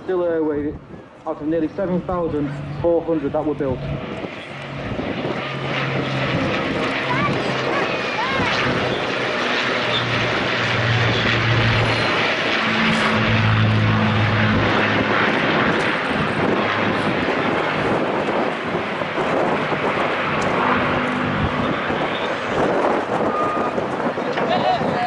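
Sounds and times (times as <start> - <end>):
propeller aircraft engine drone: 0.0 - 25.0.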